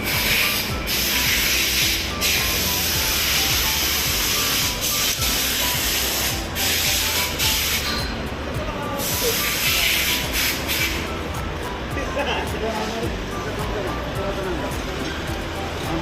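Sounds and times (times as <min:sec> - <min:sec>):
hiss of spray or air: 0:00.0 - 0:08.0, 0:09.0 - 0:11.0.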